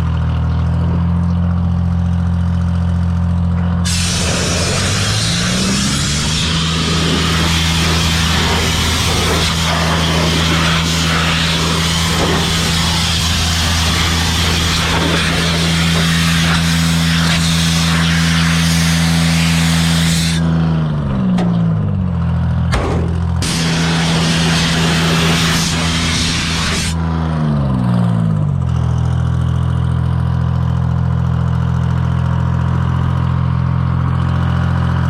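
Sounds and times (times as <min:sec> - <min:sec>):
engine running: 0:00.0 - 0:35.0
compressed air hissing: 0:03.8 - 0:20.5, 0:23.0 - 0:27.0.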